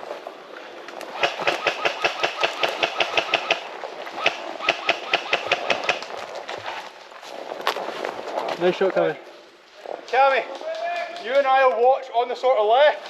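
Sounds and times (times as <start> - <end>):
electric airsoft gun rapid shots: 1.1 - 3.6, 4.2 - 6.1.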